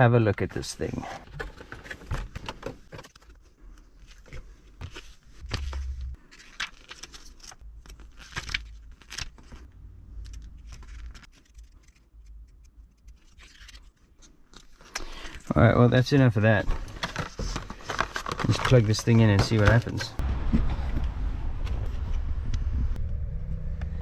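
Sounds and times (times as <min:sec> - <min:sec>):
handling clicks taps and scrapes: 0:00.3 - 0:06.2, 0:16.6 - 0:20.2.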